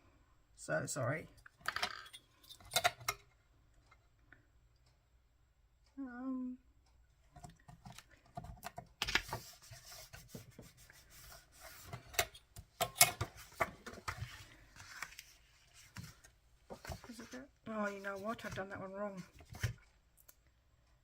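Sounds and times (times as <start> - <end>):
cardstock scraping and rubbing: 9.1 - 12.2.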